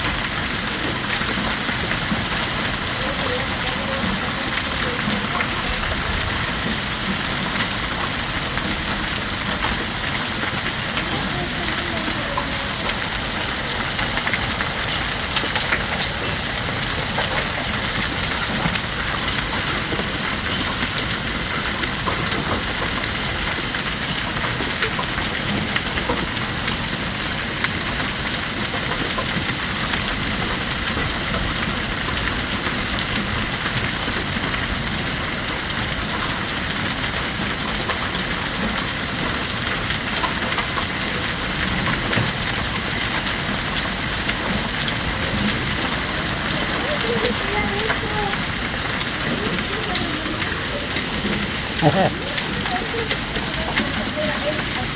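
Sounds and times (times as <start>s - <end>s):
hail impacts: 0.0s - 54.9s
heavy rain hissing: 0.0s - 54.9s.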